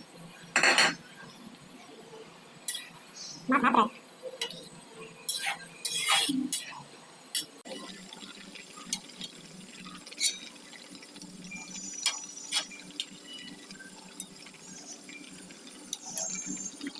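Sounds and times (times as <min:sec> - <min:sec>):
dishware clinking: 0:00.6 - 0:01.0.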